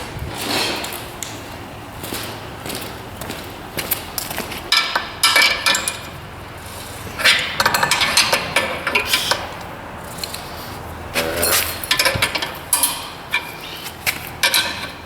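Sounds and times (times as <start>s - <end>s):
wrench clinking on metal bolts: 7.2s - 9.4s, 11.2s - 13.6s.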